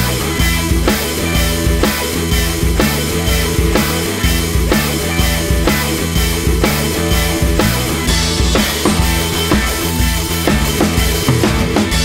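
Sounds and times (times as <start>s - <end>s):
rock instrumental music: 0.0s - 12.0s.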